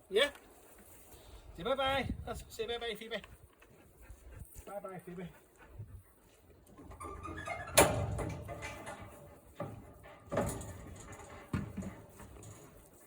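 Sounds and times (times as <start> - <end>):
gate banging shut: 6.8 - 12.6
knocks and rattles: 6.8 - 13.0.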